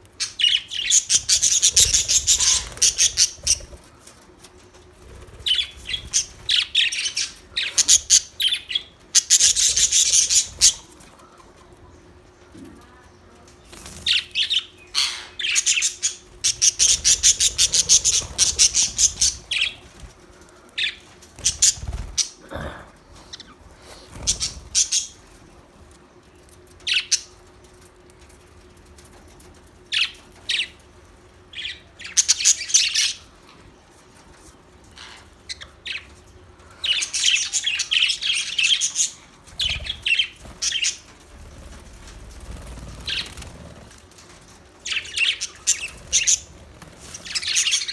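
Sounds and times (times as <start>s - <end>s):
faint steady hum: 0.0s - 47.9s
budgerigars chirping and chattering: 0.2s - 4.0s, 5.0s - 11.1s, 13.8s - 20.2s, 20.8s - 22.4s, 23.3s - 25.3s, 31.5s - 33.3s, 36.8s - 44.0s, 44.8s - 47.9s.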